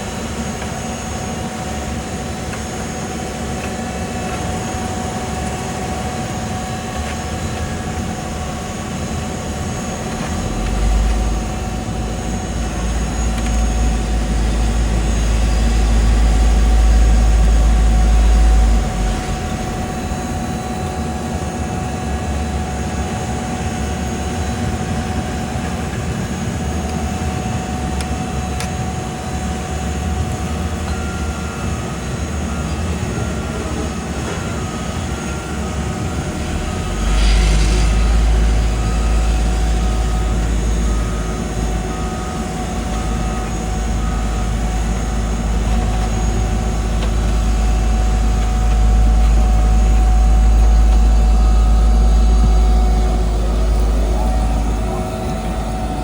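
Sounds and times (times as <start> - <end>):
diesel construction machinery running: 0.0 - 56.0
deep low rumble: 44.0 - 56.0.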